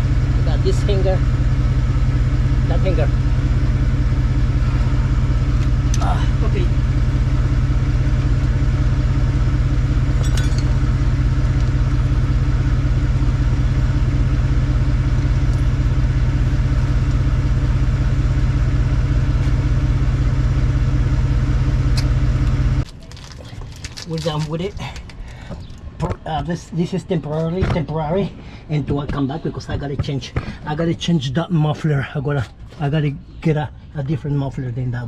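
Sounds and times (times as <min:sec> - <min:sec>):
car engine idling: 0:00.0 - 0:27.3.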